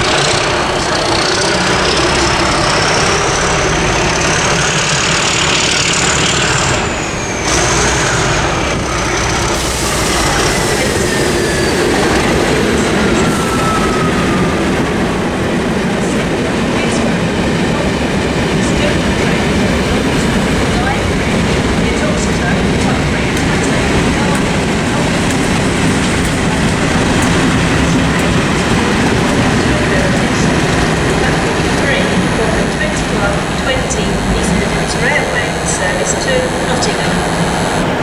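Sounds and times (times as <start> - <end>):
high wheel squeals: 0.0 - 15.5
train rumbling on rails: 0.0 - 38.0.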